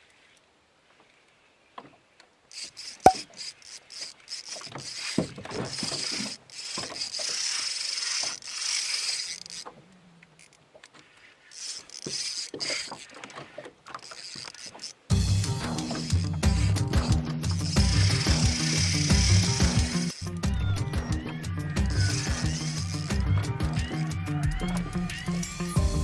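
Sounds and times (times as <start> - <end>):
fishing reel ratcheting whir: 2.5 - 9.8, 10.4 - 20.4, 21.3 - 25.8
sharp click: 3.1 - 3.3.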